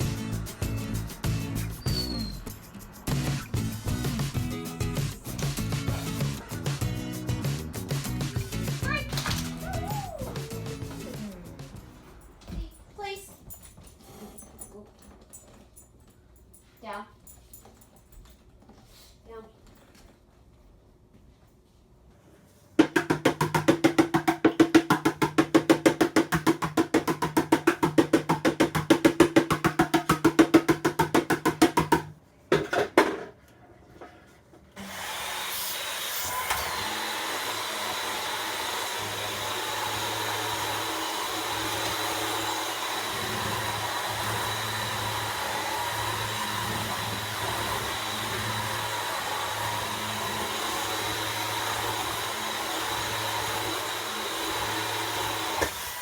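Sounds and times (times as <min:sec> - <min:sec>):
appliance motor whirring: 0:34.8 - 0:56.0.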